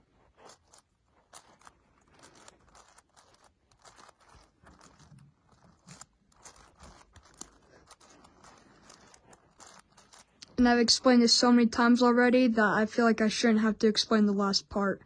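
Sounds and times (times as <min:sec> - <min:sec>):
plastic puzzle cube clacking: 0:00.3 - 0:10.6.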